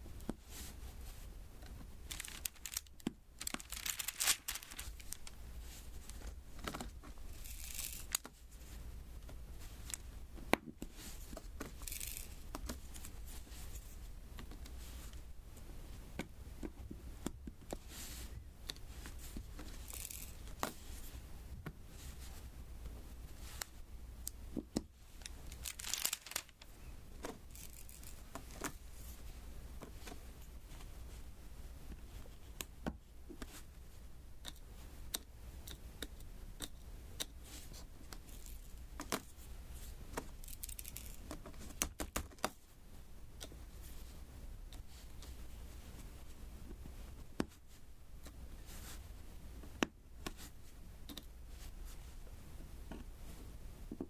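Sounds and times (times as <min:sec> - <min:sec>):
high crackly rustles: 0:00.4 - 0:08.9, 0:10.8 - 0:15.2, 0:17.9 - 0:21.2, 0:25.0 - 0:31.2, 0:37.4 - 0:42.6.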